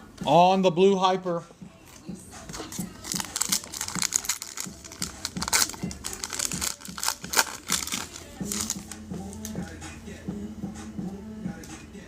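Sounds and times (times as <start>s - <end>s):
cards and packaging crinkling: 2.5s - 9.8s.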